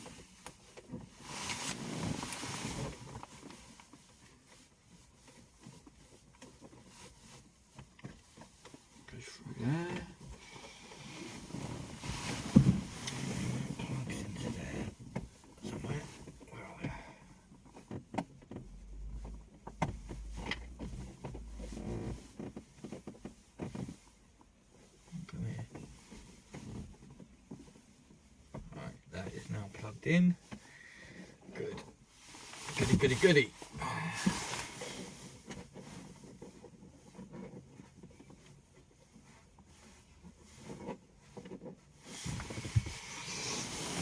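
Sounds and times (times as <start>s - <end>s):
handling rumble: 18.6s - 22.3s.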